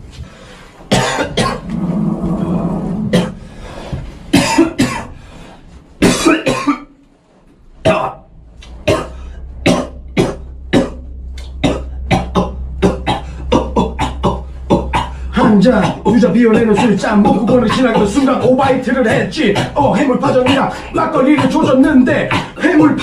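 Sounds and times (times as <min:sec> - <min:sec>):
low hum: 0:00.0 - 0:23.0
man coughing in a beat: 0:00.9 - 0:01.7, 0:04.3 - 0:05.2, 0:06.0 - 0:06.9, 0:08.8 - 0:23.0.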